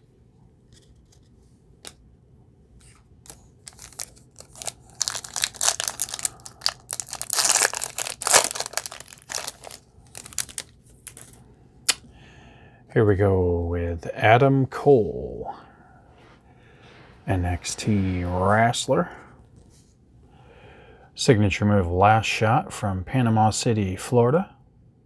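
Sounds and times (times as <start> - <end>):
foil wrapper crinkling: 3.2 - 11.4.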